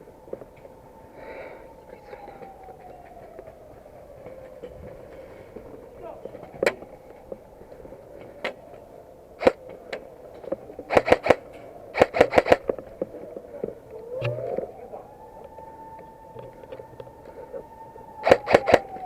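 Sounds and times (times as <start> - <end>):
siren: 0.0 - 19.0
airsoft guns firing: 10.9 - 11.4, 12.0 - 12.7, 18.2 - 18.9.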